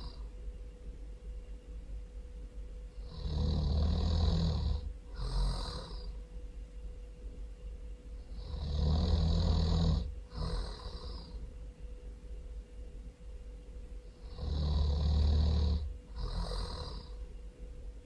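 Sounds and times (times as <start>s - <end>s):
person snoring loudly: 0.0s - 0.2s, 3.0s - 6.1s, 8.3s - 11.4s, 14.2s - 17.2s.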